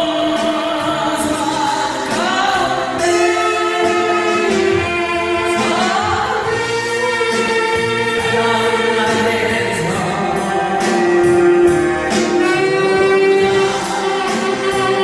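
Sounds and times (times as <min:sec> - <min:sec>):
choir singing gospel: 0:00.0 - 0:15.0.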